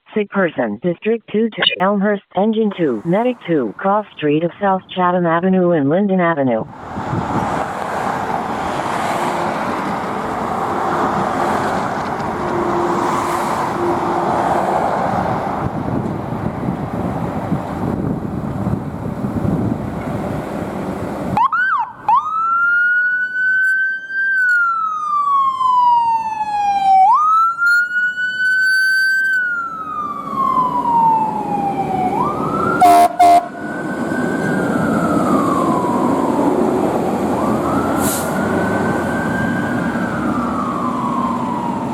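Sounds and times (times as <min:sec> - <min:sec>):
traffic and engine noise: 0:02.7 - 0:41.9
emergency siren wailing: 0:06.9 - 0:16.7, 0:21.4 - 0:41.9
loud horn blast: 0:12.2 - 0:15.3, 0:32.8 - 0:33.7.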